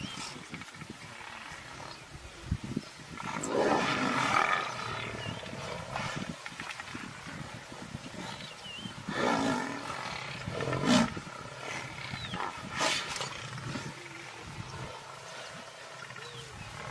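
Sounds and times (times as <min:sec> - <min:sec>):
lion roaring: 0:03.2 - 0:06.3, 0:09.1 - 0:15.4
lion growling: 0:07.0 - 0:16.9.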